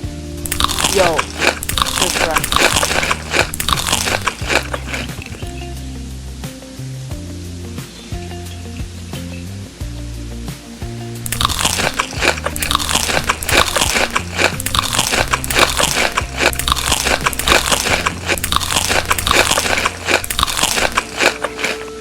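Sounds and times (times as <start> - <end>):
background music with bass: 0.0 - 22.0
crunching crisp food: 0.4 - 5.6, 11.2 - 22.0.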